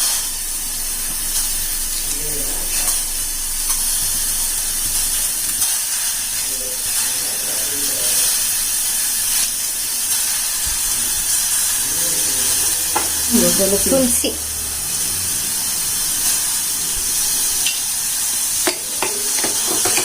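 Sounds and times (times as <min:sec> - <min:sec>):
spices sizzling in a pan: 0:00.0 - 0:20.0.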